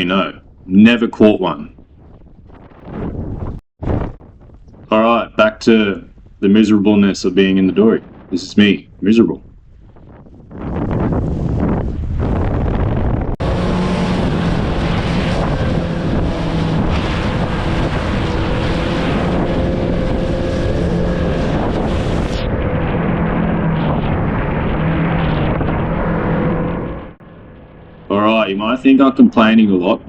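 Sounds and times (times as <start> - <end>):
wind buffeting microphone: 0.0 - 30.0
outboard motor droning: 13.4 - 28.8.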